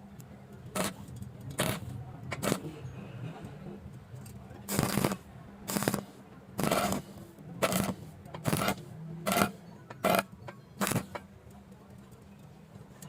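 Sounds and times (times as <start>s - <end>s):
welding arc crackling: 0.7s - 2.6s, 4.7s - 11.2s.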